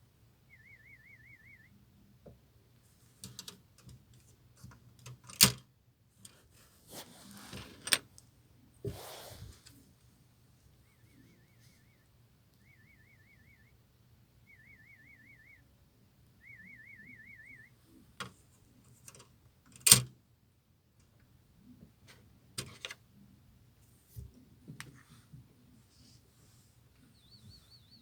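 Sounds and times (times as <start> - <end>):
high wavering beeps: 16.4 - 17.7.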